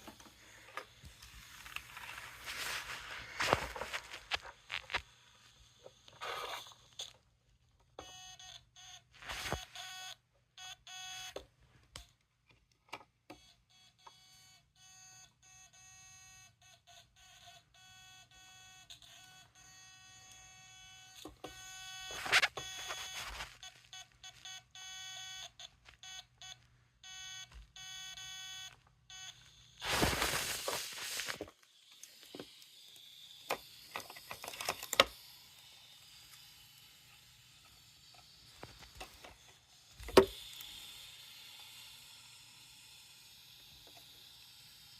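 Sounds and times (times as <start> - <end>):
buzzy morse code beeps: 21.7 - 29.4
loud rustling burst: 29.8 - 31.4.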